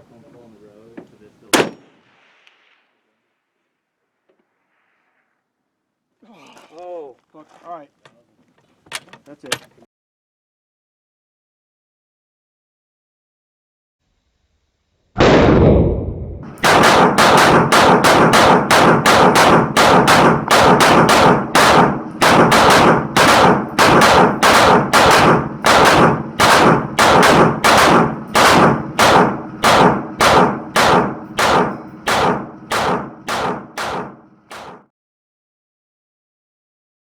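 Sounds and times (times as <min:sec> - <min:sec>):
loud bang: 0:15.2 - 0:34.9
run of sharp bangs: 0:16.4 - 0:34.9.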